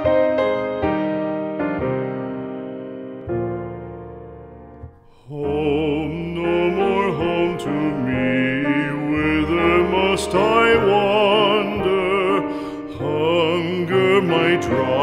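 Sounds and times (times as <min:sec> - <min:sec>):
sustained keyboard accompaniment: 0:00.0 - 0:15.0
man singing with vibrato: 0:05.1 - 0:15.0.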